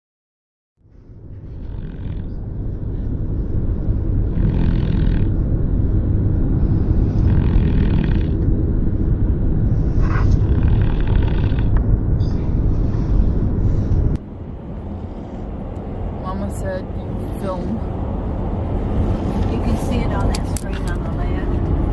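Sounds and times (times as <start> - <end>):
moving truck rumble: 0.8 - 21.9
dog snoring: 1.5 - 2.4, 4.3 - 5.4, 7.0 - 8.4, 9.9 - 11.8.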